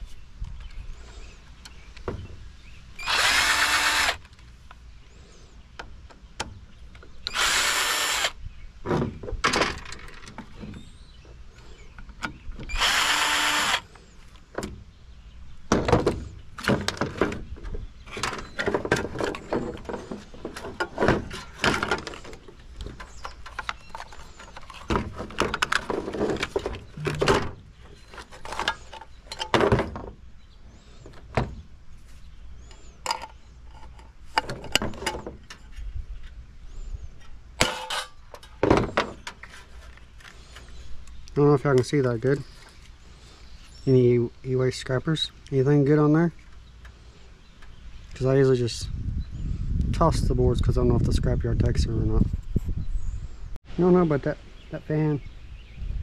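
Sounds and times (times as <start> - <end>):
cordless drill whirring: 3.0 - 4.2, 7.3 - 8.4, 12.7 - 13.9.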